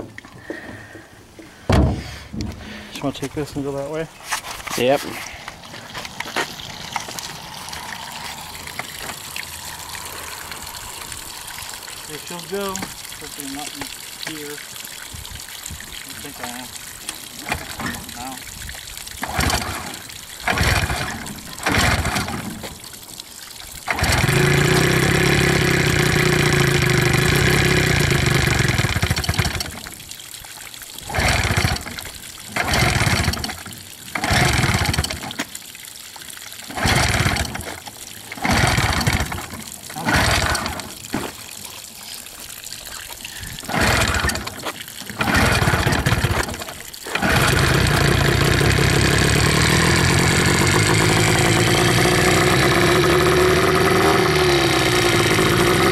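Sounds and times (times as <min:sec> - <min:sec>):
water splashing: 0:02.0 - 0:55.9
outboard motor pull-starting: 0:05.5 - 0:14.4, 0:17.4 - 0:18.2, 0:19.2 - 0:22.8, 0:23.8 - 0:29.9, 0:31.0 - 0:35.5, 0:36.6 - 0:41.3, 0:43.6 - 0:55.9
outboard engine running: 0:19.2 - 0:22.6, 0:23.9 - 0:29.8, 0:31.0 - 0:35.3, 0:36.7 - 0:41.0, 0:43.6 - 0:55.9.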